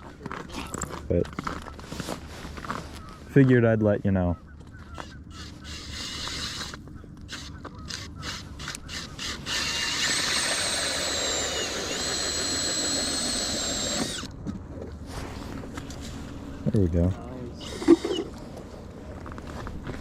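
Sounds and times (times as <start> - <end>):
ice auger drilling whine: 5.4 - 14.3, 17.6 - 18.3.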